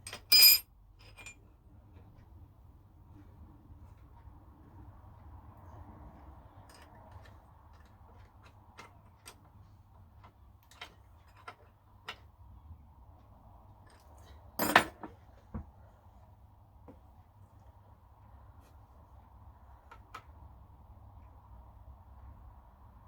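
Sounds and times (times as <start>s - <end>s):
small metal objects clinking: 0.1s - 1.4s.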